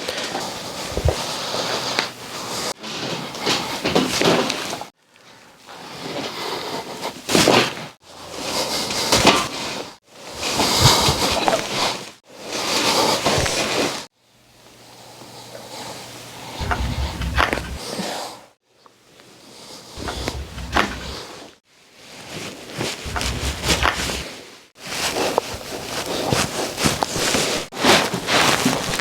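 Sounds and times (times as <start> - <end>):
rustling body movement: 16.6 - 17.8, 20.0 - 21.3, 22.2 - 29.0.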